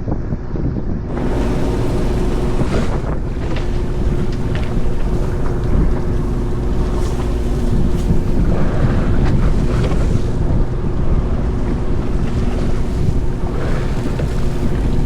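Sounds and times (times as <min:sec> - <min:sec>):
wind buffeting microphone: 0:00.0 - 0:15.0
boat engine rumbling: 0:01.0 - 0:15.0
steady hum: 0:01.0 - 0:15.0.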